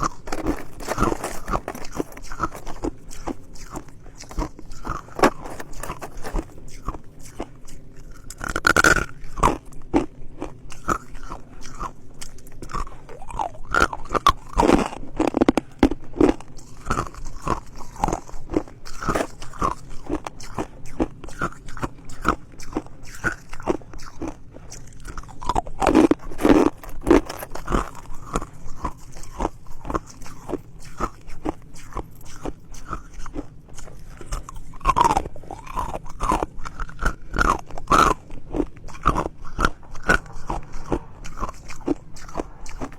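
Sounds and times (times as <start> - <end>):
ice being chewed: 0.0 - 42.9.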